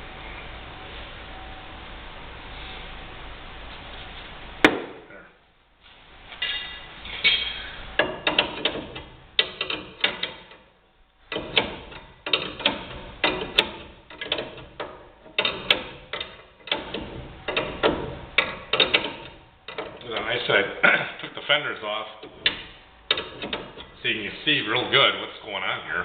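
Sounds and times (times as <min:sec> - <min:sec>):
metallic clicks and clacks: 0:08.0 - 0:10.6, 0:11.3 - 0:20.4, 0:22.2 - 0:24.0.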